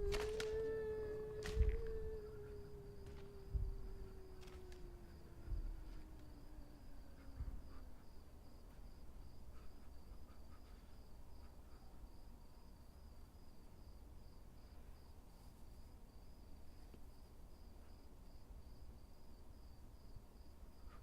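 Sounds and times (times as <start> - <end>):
low falling tone: 0.0 - 7.6
low rumble: 0.0 - 8.3
cricket chirping: 0.0 - 21.0.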